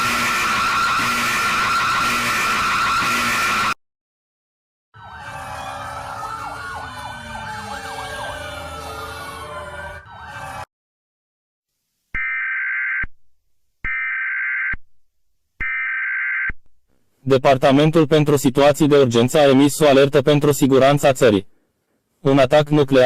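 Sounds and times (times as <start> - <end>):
emergency alert attention tone: 0.0 - 3.8
sirens wailing: 0.0 - 3.8, 5.0 - 10.7.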